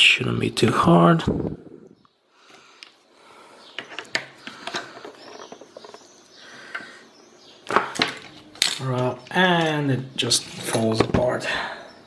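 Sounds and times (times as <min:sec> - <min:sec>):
small metal parts clicking: 0:07.6 - 0:11.1.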